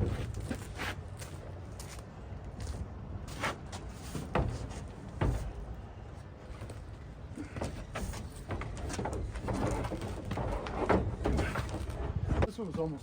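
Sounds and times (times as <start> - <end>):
sharp knocks on shed panels: 4.2 - 5.8, 7.4 - 12.5.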